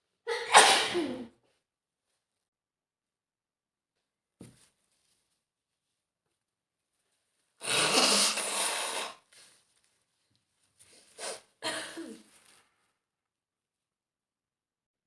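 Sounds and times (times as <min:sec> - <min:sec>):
woman sneezing: 0:00.3 - 0:01.3
quiet sniffs: 0:10.8 - 0:11.5.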